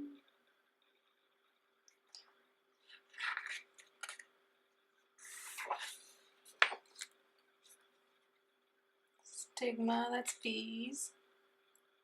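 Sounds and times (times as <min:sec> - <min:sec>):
book pages turning: 0:02.8 - 0:04.2, 0:05.4 - 0:07.1.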